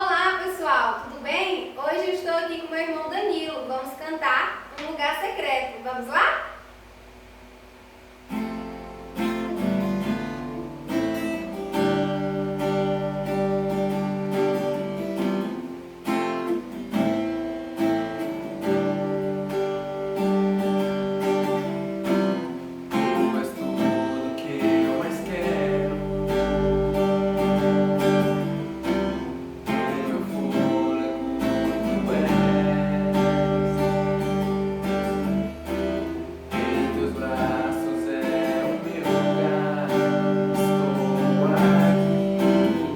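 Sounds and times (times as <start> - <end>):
acoustic guitar strumming: 7.7 - 42.9.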